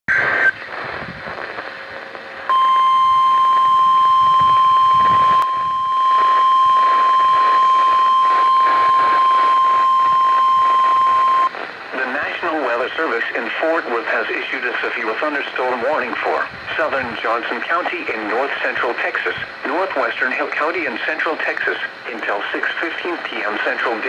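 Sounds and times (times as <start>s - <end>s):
radio hiss: 0.1s - 24.0s
data tone burst: 2.5s - 11.5s.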